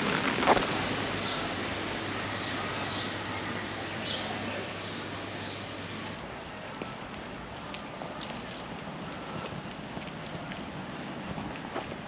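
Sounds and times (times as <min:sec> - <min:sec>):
bird chirping: 0:01.2 - 0:01.6, 0:02.2 - 0:05.8.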